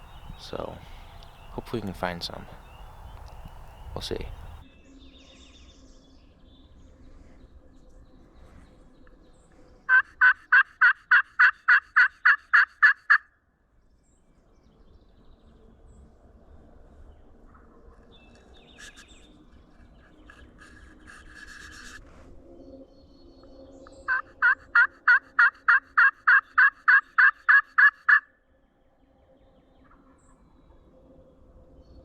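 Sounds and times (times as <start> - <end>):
turkey yelps: 9.9 - 13.2, 24.1 - 28.2.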